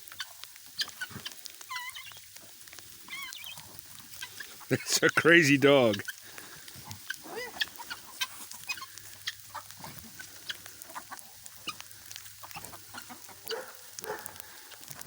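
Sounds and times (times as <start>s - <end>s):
chickens clucking softly: 6.8s - 14.4s.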